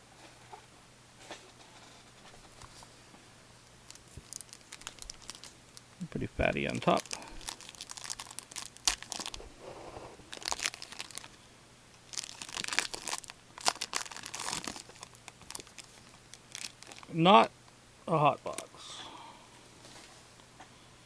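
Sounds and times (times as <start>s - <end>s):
foil wrappers crinkling and tearing: 3.8s - 5.8s, 6.6s - 11.4s, 12.1s - 17.1s.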